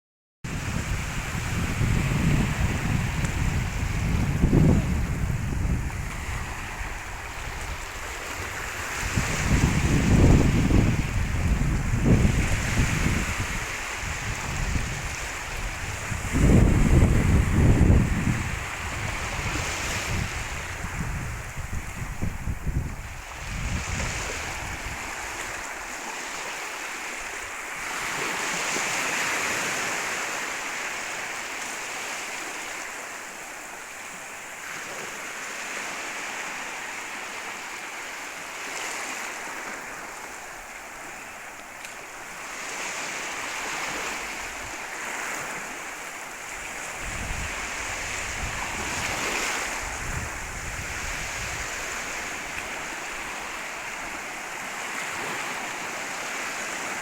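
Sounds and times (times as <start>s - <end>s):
wind rumble on microphone: 0.4s - 26.6s, 42.5s - 56.1s
sea waves breaking on beach: 0.5s - 57.0s.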